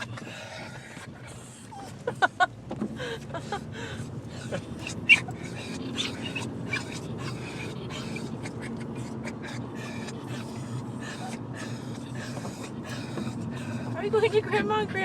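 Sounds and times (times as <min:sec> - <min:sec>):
car rumble: 0:00.0 - 0:15.0
dogs panting hard: 0:00.0 - 0:15.0
dog high-pitched cry: 0:04.4 - 0:14.4.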